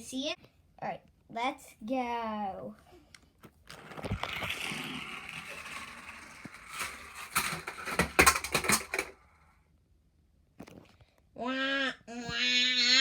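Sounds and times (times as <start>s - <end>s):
pieces clattering and tumbling: 3.6s - 9.4s
toy car motor whirring: 3.7s - 9.3s.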